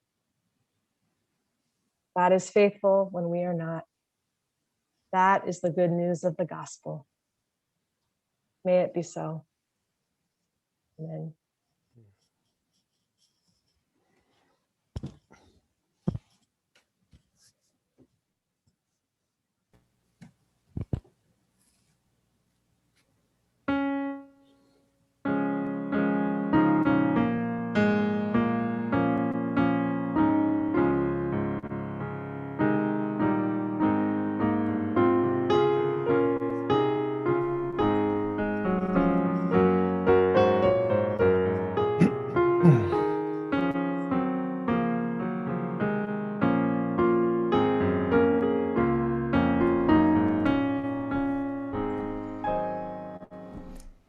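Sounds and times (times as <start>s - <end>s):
solo piano music: 23.7s - 24.5s, 25.2s - 53.9s.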